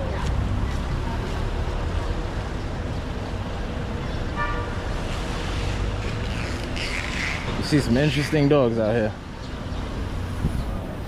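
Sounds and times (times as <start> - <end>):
street traffic rumble: 0.0 - 11.0
car horn toot: 4.4 - 4.7.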